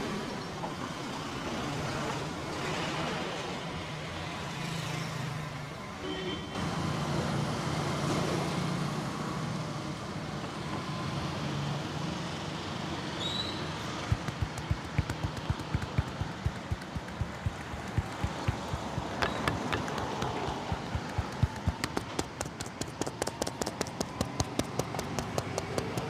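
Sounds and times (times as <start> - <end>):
street traffic hum: 0.0 - 26.0
hands slapping on body: 14.0 - 26.0.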